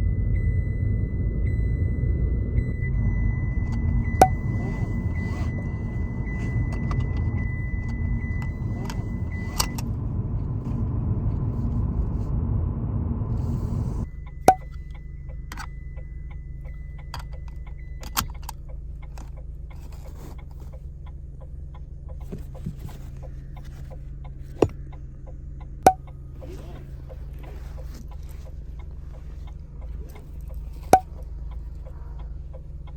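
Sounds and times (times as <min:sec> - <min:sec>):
seat belt warning tone: 0:00.0 - 0:12.4, 0:13.3 - 0:32.9
engine and road rumble: 0:00.0 - 0:32.9
seat belt buckle latching click: 0:03.6 - 0:09.9, 0:17.0 - 0:20.8.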